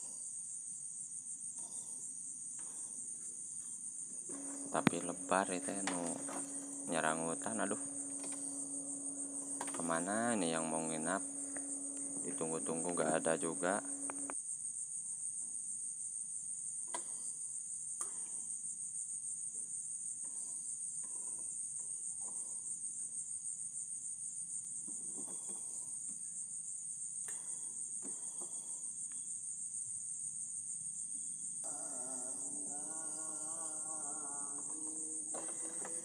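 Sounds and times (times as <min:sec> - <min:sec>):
crickets chirping: 0:00.0 - 0:36.0
faint clicks: 0:04.3 - 0:14.4
low-pitched hum: 0:04.3 - 0:14.4.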